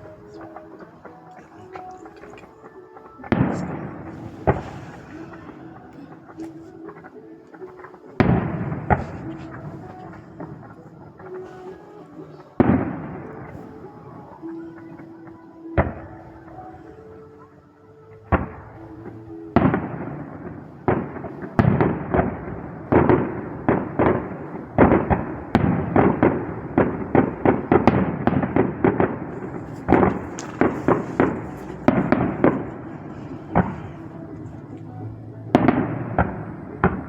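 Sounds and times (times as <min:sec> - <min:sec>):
fireworks bangs and crackles: 0:03.1 - 0:07.2, 0:07.8 - 0:11.8, 0:18.3 - 0:34.9, 0:35.5 - 0:37.0.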